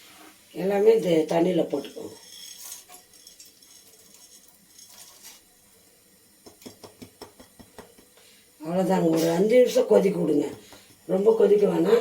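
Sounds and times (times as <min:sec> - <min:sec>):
stems and spices pattering into water: 0:01.2 - 0:08.2.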